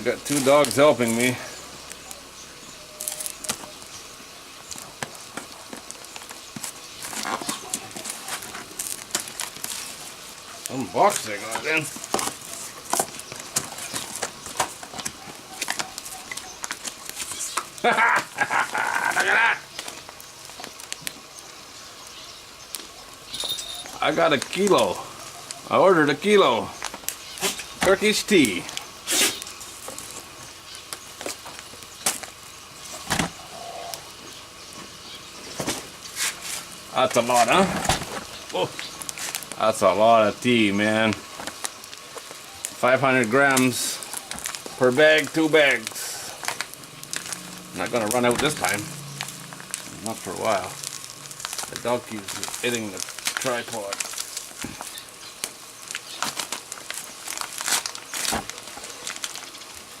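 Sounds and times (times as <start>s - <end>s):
packaging rustling and clicking: 4.7s - 10.1s, 11.1s - 18.4s, 43.4s - 59.9s.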